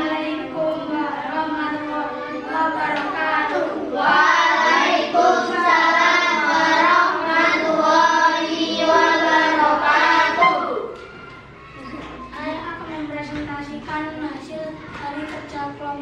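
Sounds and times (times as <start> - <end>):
children singing in unison: 0.0 - 11.2.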